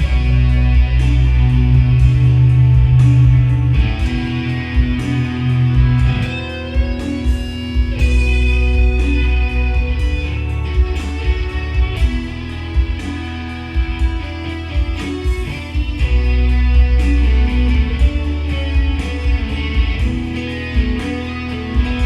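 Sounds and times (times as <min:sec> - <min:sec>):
heavy bass line: 0:00.0 - 0:22.0
ringing guitar notes: 0:00.0 - 0:22.0.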